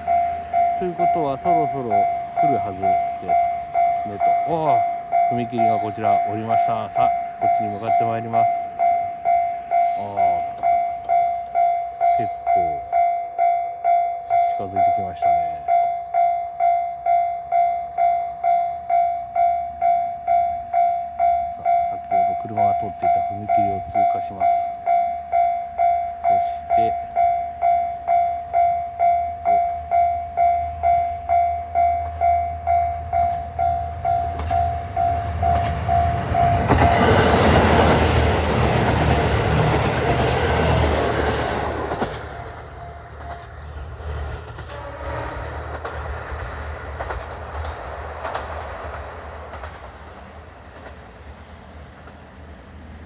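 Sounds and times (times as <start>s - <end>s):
level crossing alarm ringing: 0.0s - 43.8s
diesel train passing: 0.0s - 53.0s.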